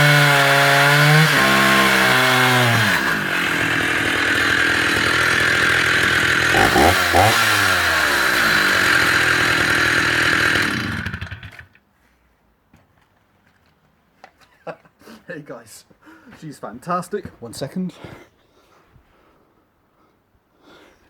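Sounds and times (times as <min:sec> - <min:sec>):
chainsaw running with throttle blips: 0:00.0 - 0:11.8.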